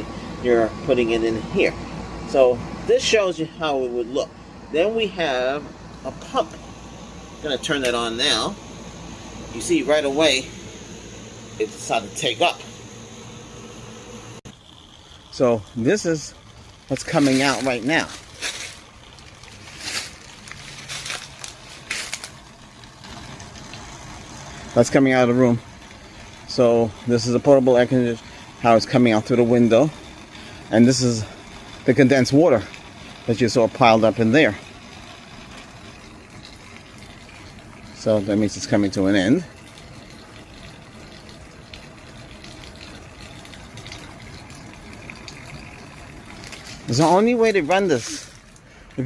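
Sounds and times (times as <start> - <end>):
pump humming: 0.0 - 49.0
water pouring into a pan: 14.5 - 49.0.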